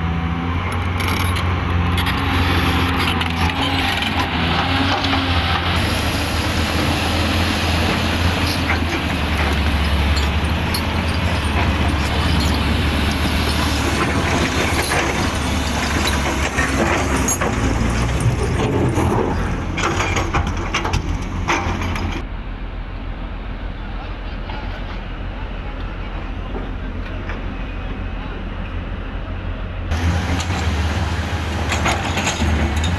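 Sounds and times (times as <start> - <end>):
diesel engine hum under load: 0.0 - 32.9.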